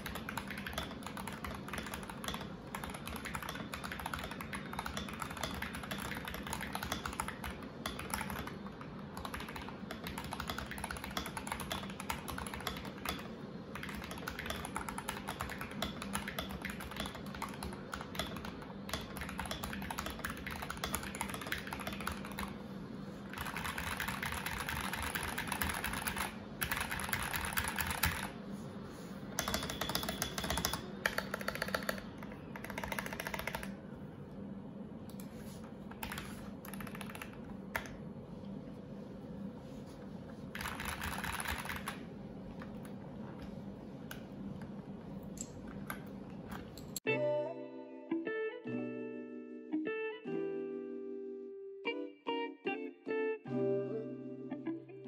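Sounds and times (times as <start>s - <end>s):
mechanical keyboard typing: 0.0s - 22.6s, 23.3s - 28.4s, 29.4s - 33.8s, 35.9s - 37.9s, 40.5s - 42.0s.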